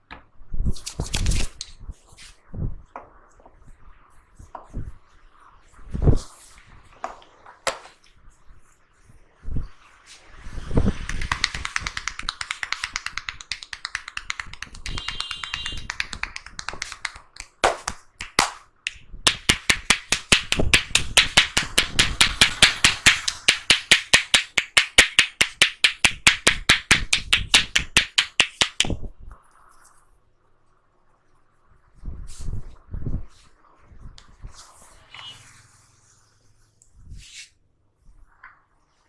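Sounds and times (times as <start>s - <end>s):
hands tapping on head: 11.1s - 29.0s.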